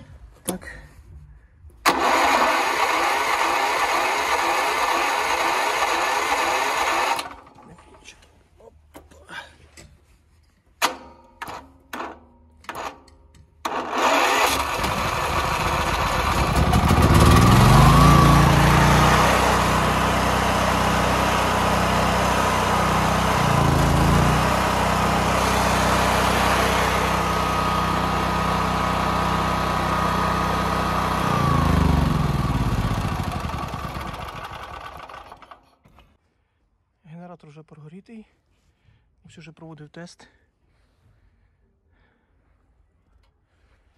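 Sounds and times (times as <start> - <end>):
generator engine cranking: 1.8 - 7.6, 10.8 - 36.0
small generator engine running: 1.9 - 7.5, 13.6 - 35.8.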